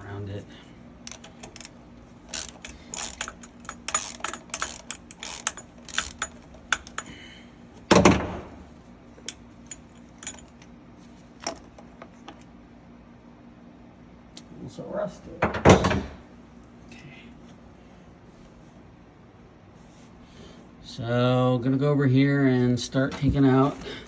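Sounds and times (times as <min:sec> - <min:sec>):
ratchet wrench clicking: 0:01.0 - 0:01.7, 0:02.3 - 0:07.1
metal clinks: 0:02.3 - 0:07.2, 0:09.2 - 0:10.7.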